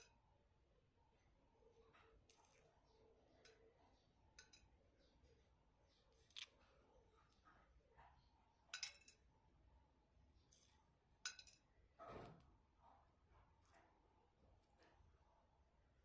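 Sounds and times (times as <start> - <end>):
faint eating sounds: 0.0 - 16.0.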